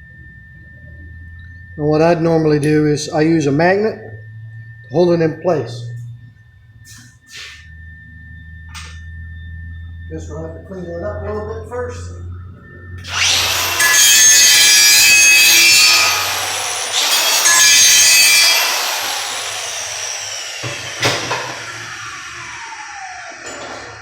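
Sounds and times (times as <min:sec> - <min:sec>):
grinder winding down whine: 0:12.2 - 0:24.0
angle grinder grinding steel: 0:13.0 - 0:24.0.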